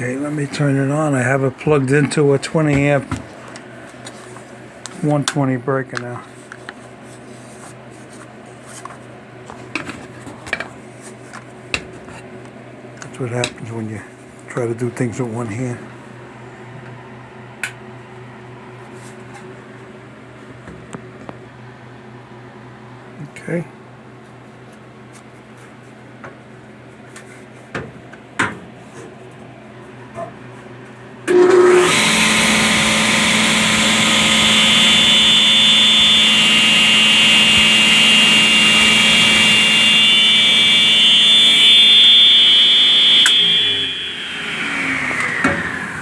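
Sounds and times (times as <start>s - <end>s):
table saw coasting down: 31.3s - 46.0s
table saw running with high whine: 31.3s - 46.0s.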